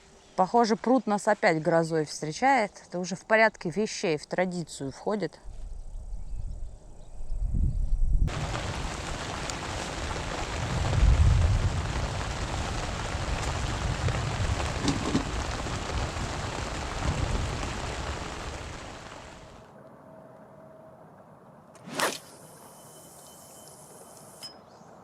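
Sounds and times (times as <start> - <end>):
low rumbling: 5.5 - 19.7
heavy rain falling: 8.3 - 19.7.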